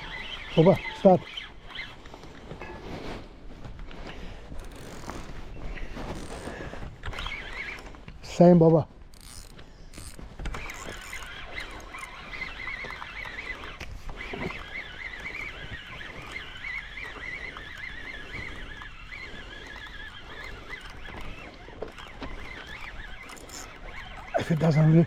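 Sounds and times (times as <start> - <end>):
drone propellers whining: 0.0 - 2.1, 9.1 - 25.0.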